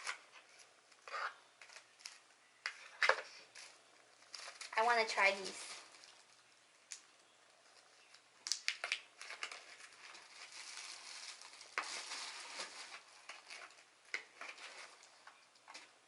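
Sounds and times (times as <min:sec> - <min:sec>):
plastic packaging crinkling: 0:02.9 - 0:07.1, 0:08.0 - 0:16.0.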